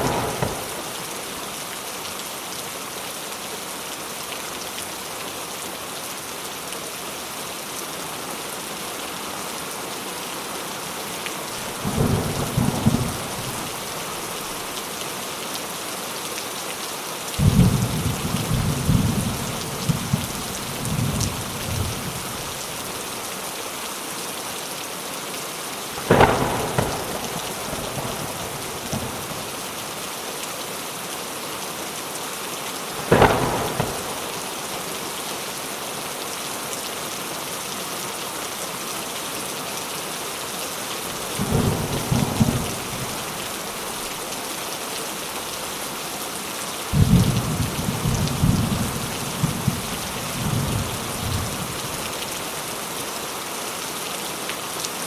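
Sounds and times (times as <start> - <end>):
sharp thunder claps: 0.0 - 1.1, 26.0 - 29.4, 33.0 - 34.6
thunder rumbling: 0.0 - 1.3, 11.7 - 14.7, 17.4 - 22.8, 26.0 - 29.6, 33.0 - 34.7, 41.2 - 44.2, 47.0 - 52.1
steady rain falling: 0.0 - 55.0.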